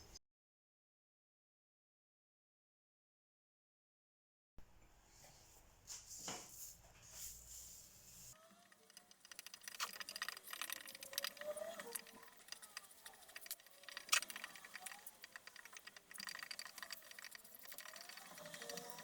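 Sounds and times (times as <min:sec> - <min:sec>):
small hard objects clicking: 0:08.5 - 0:19.0.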